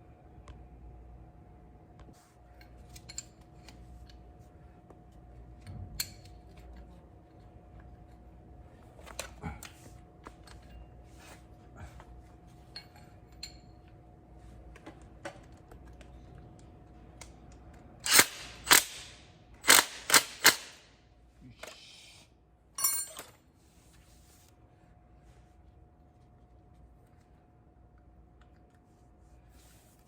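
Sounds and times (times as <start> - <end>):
metallic clinks of hand tools: 22.8 - 23.4.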